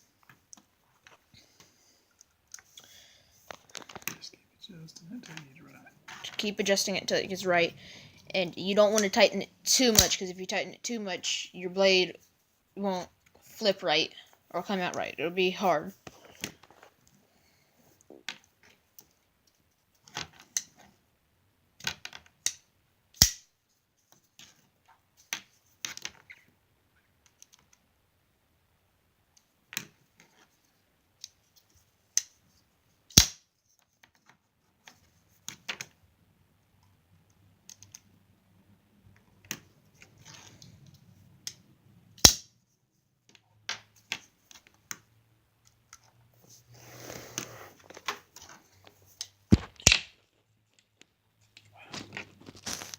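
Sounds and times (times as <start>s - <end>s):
loud sharp clicks: 23.2s - 23.4s, 42.2s - 42.5s.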